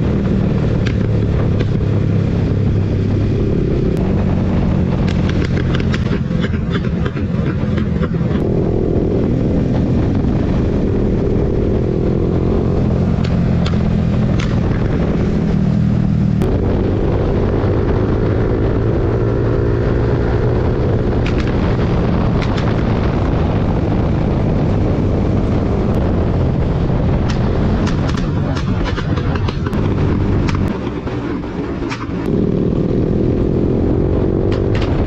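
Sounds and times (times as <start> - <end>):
motorcycle engine accelerating: 0.0 - 35.0
sharp cracks: 4.9 - 8.4, 13.2 - 15.0, 21.2 - 23.0, 27.2 - 32.3, 34.5 - 35.0.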